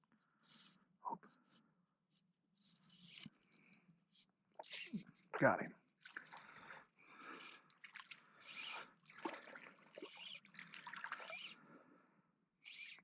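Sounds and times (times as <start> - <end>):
fish splashing in water: 7.8 - 11.6.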